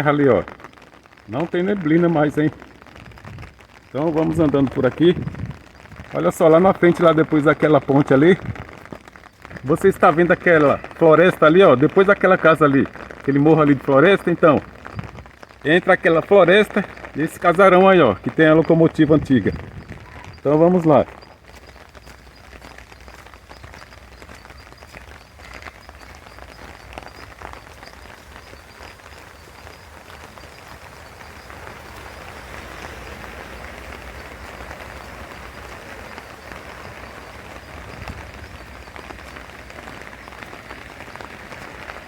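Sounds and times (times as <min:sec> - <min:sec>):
stream running: 0:00.0 - 0:42.0.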